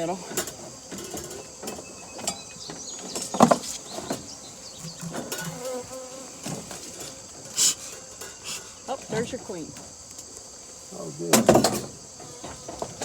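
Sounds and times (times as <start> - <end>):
bees buzzing: 0.0 - 13.0
wooden hive frames knocking: 0.7 - 6.7.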